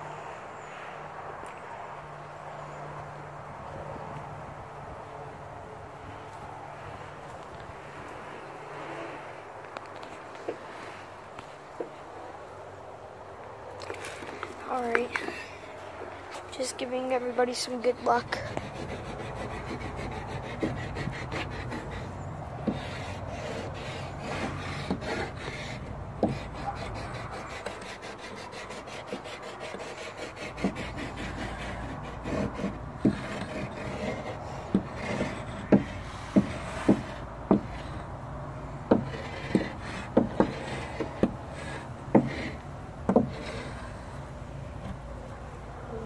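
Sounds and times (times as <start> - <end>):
chalk scraping on wooden board: 17.5 - 38.1, 38.9 - 44.1.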